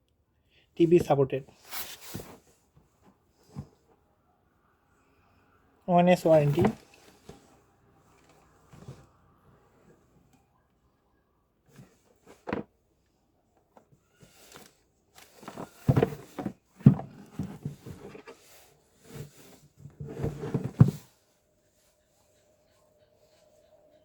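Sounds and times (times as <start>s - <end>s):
cardboard scraping and rustling: 1.6s - 2.6s, 6.2s - 7.5s, 14.2s - 21.1s.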